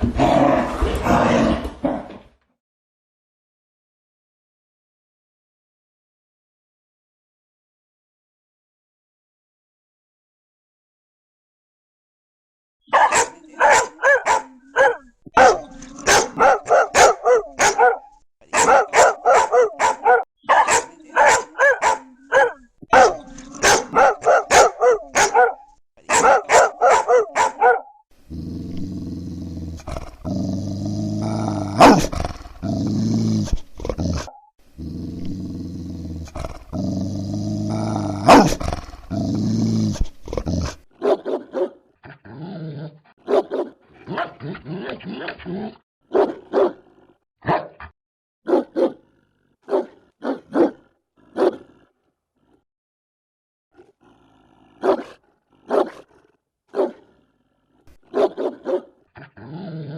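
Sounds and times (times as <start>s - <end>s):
dogs barking: 12.9s - 28.0s, 31.7s - 32.1s, 38.2s - 38.6s, 41.0s - 41.8s, 43.2s - 44.6s, 46.1s - 49.0s, 49.6s - 51.7s, 54.8s - 56.1s, 56.7s - 57.0s, 58.0s - 59.0s
dog growling: 13.4s - 20.3s, 21.0s - 40.9s, 48.9s - 52.6s, 53.7s - 59.9s.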